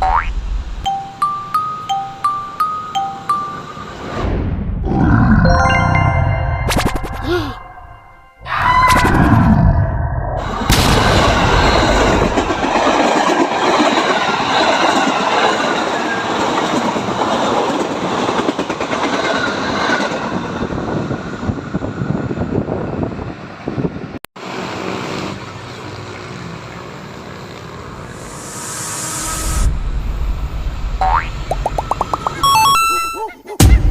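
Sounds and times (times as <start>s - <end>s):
train passing close: 0.6s - 4.8s, 10.4s - 31.0s.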